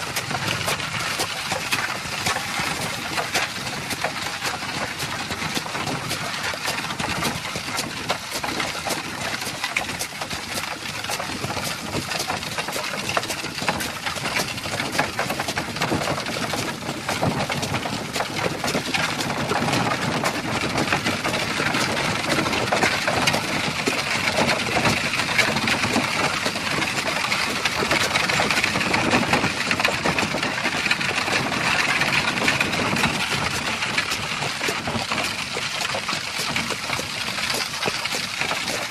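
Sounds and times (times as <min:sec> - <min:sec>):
cart rattling: 0:00.0 - 0:38.9
hooves clopping: 0:00.0 - 0:38.9.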